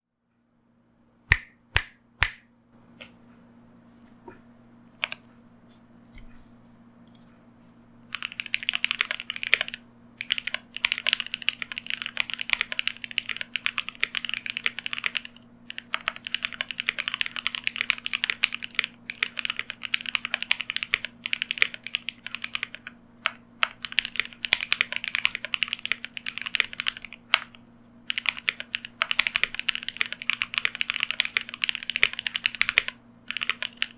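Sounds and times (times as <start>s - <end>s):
faint steady hum: 0.2s - 33.9s
mechanical keyboard typing: 8.1s - 33.9s.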